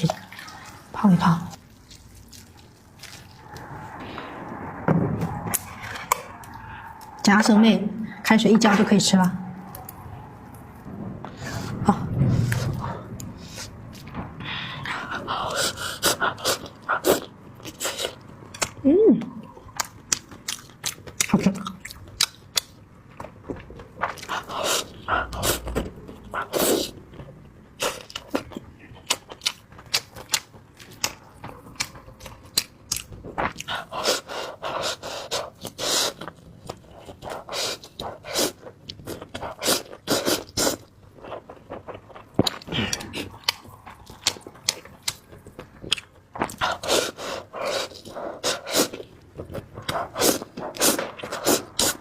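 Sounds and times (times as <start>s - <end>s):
slurping noodles: 33.6s - 36.3s, 37.0s - 40.9s, 46.6s - 49.1s, 49.9s - 52.0s.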